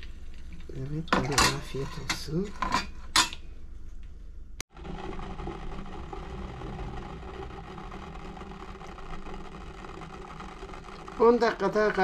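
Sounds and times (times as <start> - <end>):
small motor humming: 4.7 - 12.0.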